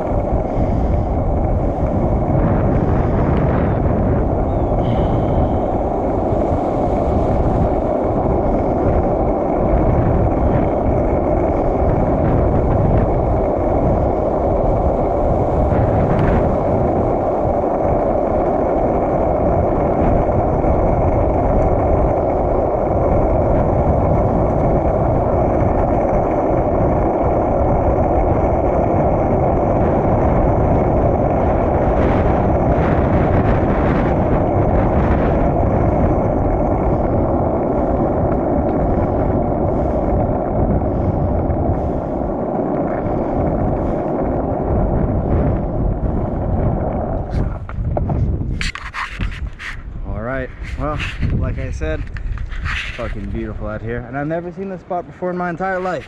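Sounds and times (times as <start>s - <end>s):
skateboard wheels rolling on asphalt: 0.0s - 56.0s
wind buffeting microphone: 0.0s - 56.0s.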